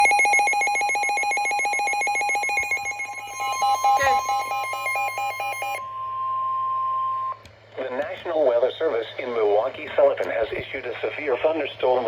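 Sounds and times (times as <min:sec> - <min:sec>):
chirpy electronic data warble: 0:00.0 - 0:05.9
steady alert tone: 0:00.0 - 0:05.9.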